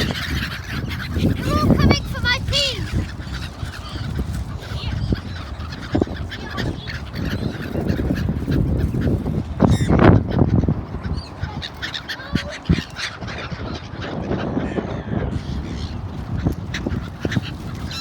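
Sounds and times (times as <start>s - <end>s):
waterfowl calling: 0.0s - 18.0s.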